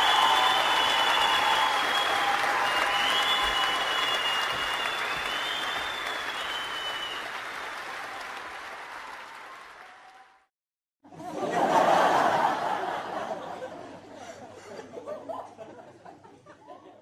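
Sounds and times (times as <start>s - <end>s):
whistles: 0.0s - 7.4s
crowd applauding: 0.0s - 10.5s
audience laughing: 11.1s - 17.0s.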